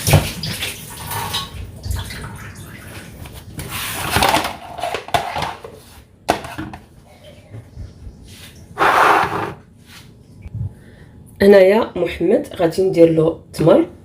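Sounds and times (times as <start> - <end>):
containers and utensils clattering: 3.6 - 7.5.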